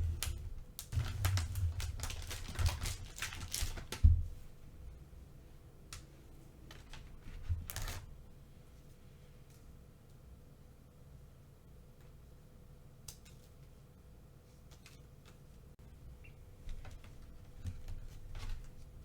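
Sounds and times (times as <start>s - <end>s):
packaging crinkling: 0.0s - 4.0s.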